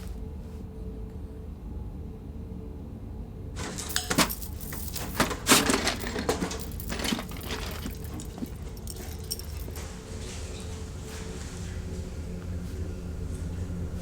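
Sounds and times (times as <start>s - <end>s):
low steady hum: 0.0s - 14.0s
knocks and clattering: 3.6s - 10.7s.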